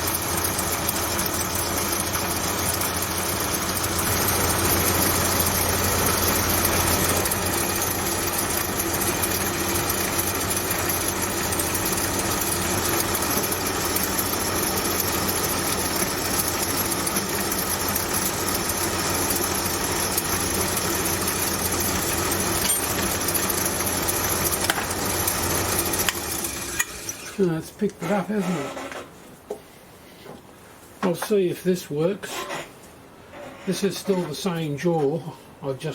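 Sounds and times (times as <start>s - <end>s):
milling machine motor hum: 0.0s - 28.1s.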